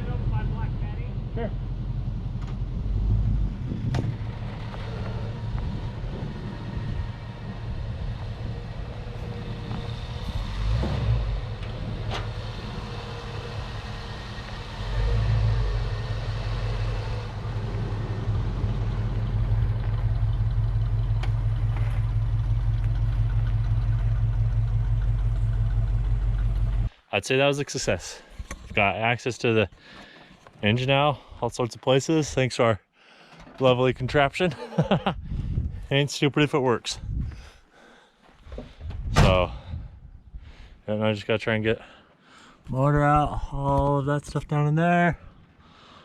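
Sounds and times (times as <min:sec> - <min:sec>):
engine idling: 0:00.0 - 0:26.9.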